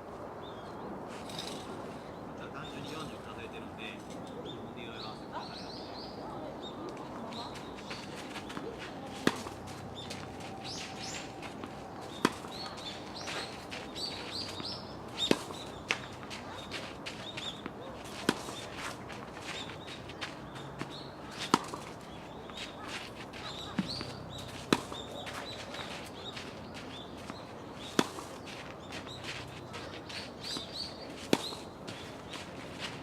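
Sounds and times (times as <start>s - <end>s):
small birds chirping: 0.4s - 33.0s
tennis balls struck with rackets: 7.5s - 33.0s.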